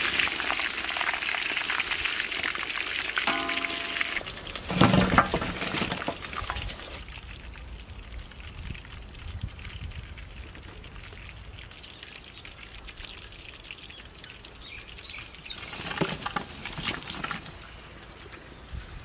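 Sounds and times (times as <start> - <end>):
food frying in hot oil: 0.0 - 19.0
sharp knocks: 3.3 - 7.0.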